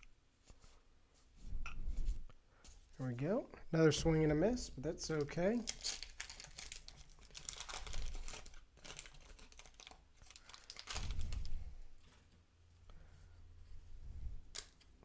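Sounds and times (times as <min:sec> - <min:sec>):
wax paper wrapper tearing and crinkling: 0:05.2 - 0:11.5.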